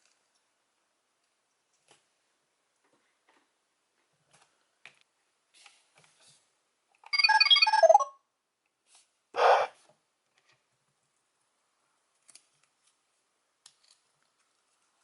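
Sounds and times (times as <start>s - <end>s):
toy electronic beeping jingle: 7.1s - 8.2s.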